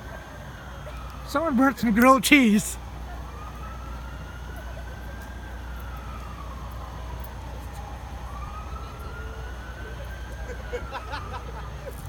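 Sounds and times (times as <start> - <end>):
emergency vehicle siren wailing: 0.0 - 12.0.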